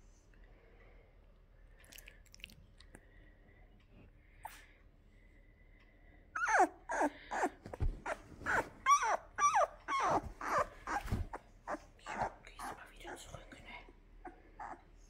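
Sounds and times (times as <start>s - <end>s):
puppy squealing: 6.4s - 12.8s, 14.2s - 14.9s.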